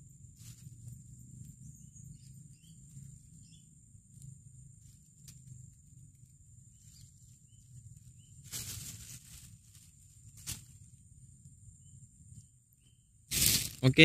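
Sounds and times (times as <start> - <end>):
brief rustle: 8.4 - 10.8.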